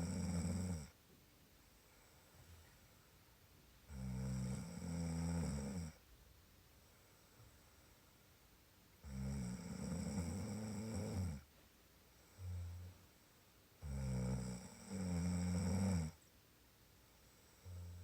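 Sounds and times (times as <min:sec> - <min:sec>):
rasping snores: 0:00.0 - 0:01.0, 0:03.9 - 0:06.0, 0:09.0 - 0:11.5, 0:13.8 - 0:16.2.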